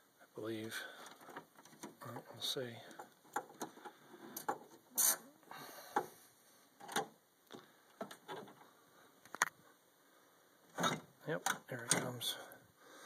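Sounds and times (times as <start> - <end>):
parts clicking and knocking: 0.6 - 4.9, 6.8 - 8.7, 10.7 - 12.3.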